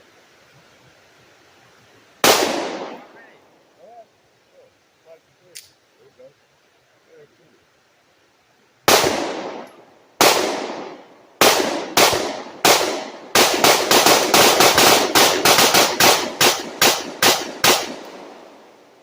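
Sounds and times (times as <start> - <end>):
gunshots with echo: 2.2 - 3.2, 8.9 - 18.5.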